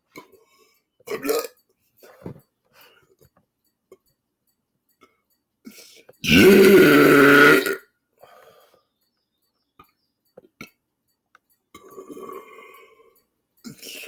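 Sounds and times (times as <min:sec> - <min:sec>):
man belching: 0:01.1 - 0:01.6, 0:06.2 - 0:07.9.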